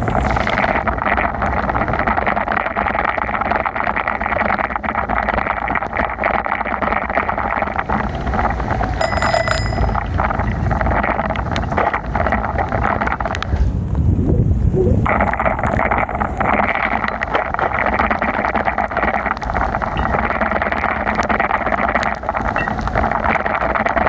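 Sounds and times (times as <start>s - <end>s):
bicycle tyres on wet road: 0.0s - 3.4s
wind on microphone: 7.7s - 21.0s
bicycle bell ringing: 9.0s - 10.3s.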